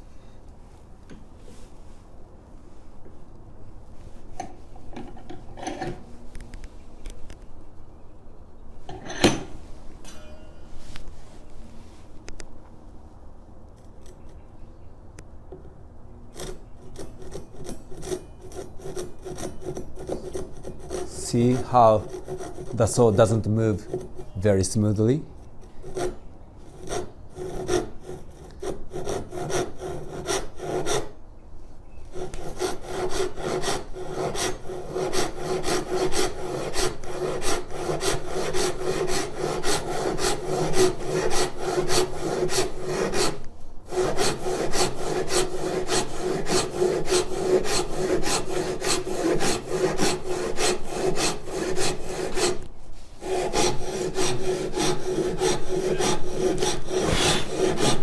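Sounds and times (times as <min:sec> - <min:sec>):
hand saw cutting timber: 0:16.3 - 0:25.0, 0:25.8 - 0:31.1, 0:32.1 - 0:58.0.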